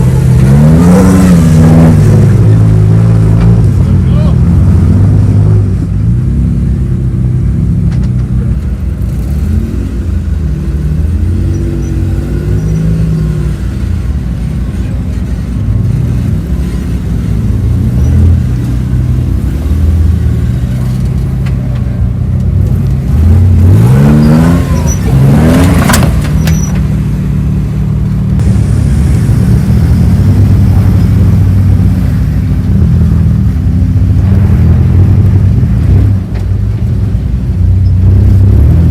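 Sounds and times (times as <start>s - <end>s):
engine rev rising in pitch: 0.0s - 3.2s.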